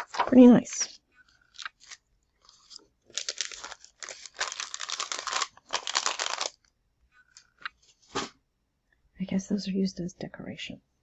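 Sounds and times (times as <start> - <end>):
packaging crumpling: 1.4 - 6.7.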